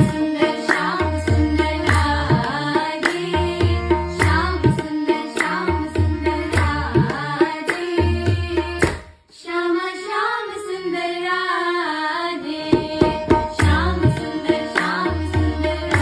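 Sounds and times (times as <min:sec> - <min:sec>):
person singing: 0:00.0 - 0:08.8, 0:09.4 - 0:16.0
tabla drums: 0:00.0 - 0:09.1, 0:12.7 - 0:16.0.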